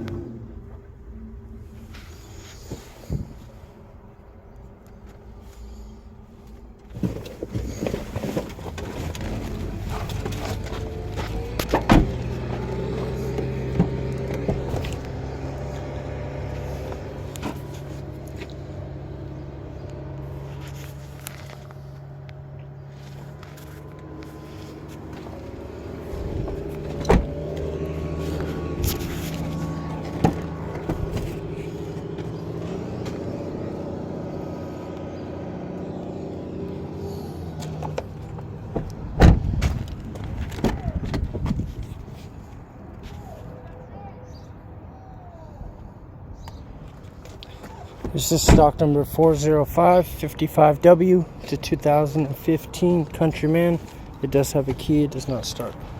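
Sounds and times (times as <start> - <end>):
low engine hum: 0.0 - 55.9.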